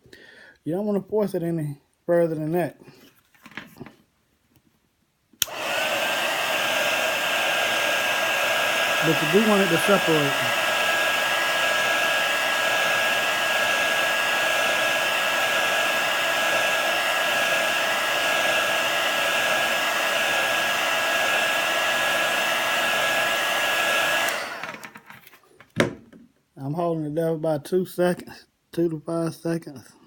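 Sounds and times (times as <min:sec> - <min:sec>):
heat gun blowing with whine: 0:05.4 - 0:25.1.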